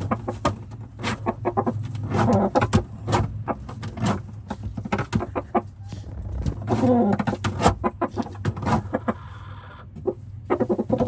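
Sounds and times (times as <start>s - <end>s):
rooster clucking: 0.0s - 4.2s, 4.9s - 11.0s.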